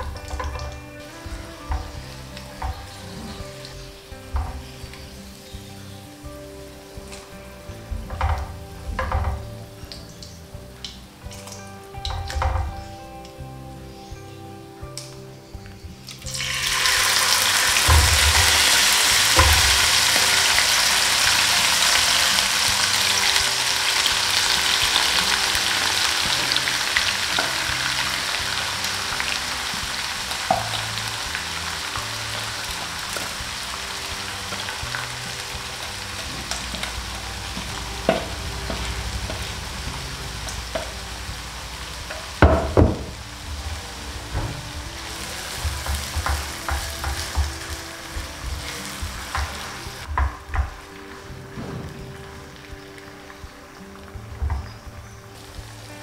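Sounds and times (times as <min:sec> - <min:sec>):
food sizzling in hot oil: 0:00.0 - 0:14.1, 0:15.5 - 0:56.0
utensil knocks: 0:07.9 - 0:09.6, 0:42.1 - 0:43.2.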